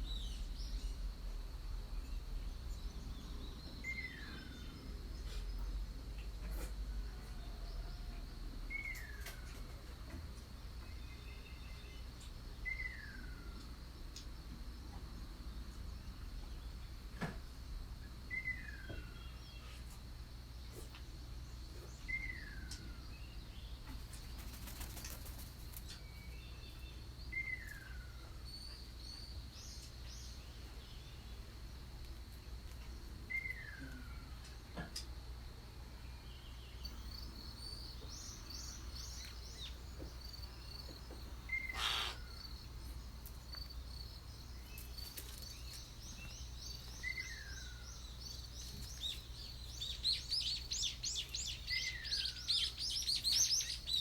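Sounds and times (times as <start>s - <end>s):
rapid high bird chirps: 36.9s - 43.0s.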